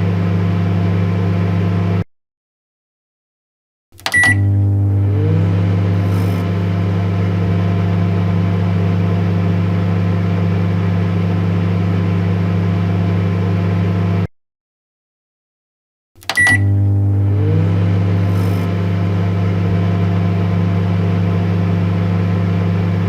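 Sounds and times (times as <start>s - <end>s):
microwave oven humming: 0.0s - 2.0s, 4.1s - 14.3s, 16.3s - 23.0s
microwave click: 4.0s - 4.7s, 16.2s - 17.0s
microwave beep: 4.0s - 5.1s, 16.3s - 17.4s.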